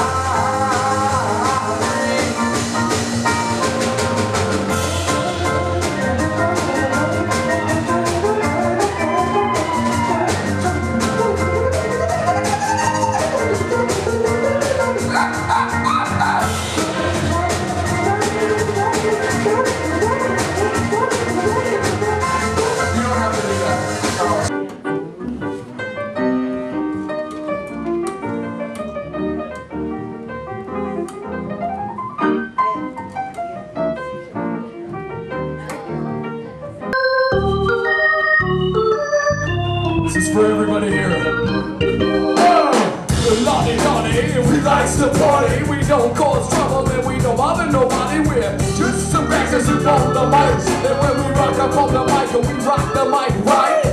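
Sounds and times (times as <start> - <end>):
organ playing chords: 0.0 - 33.1, 35.4 - 53.9
live band playing: 0.0 - 36.2, 36.8 - 53.9.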